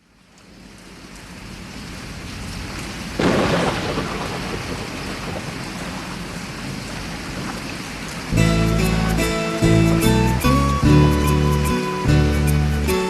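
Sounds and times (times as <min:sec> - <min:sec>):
steady rain: 0:00.0 - 0:13.0
thunderclap rumbling: 0:01.8 - 0:07.7.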